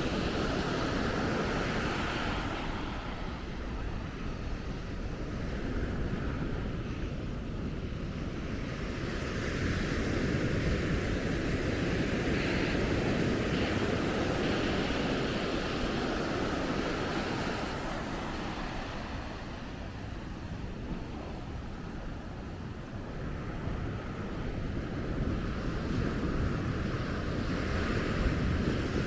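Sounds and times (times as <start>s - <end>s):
wind rumbling on microphone: 0.0s - 29.0s
sea surf breaking on beach: 8.5s - 29.0s.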